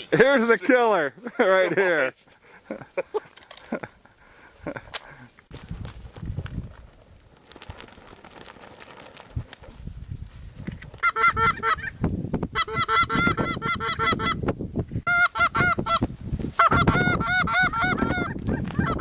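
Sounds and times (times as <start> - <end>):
goose honking: 11.0 - 12.0, 12.6 - 14.4, 15.1 - 16.0, 16.6 - 19.0.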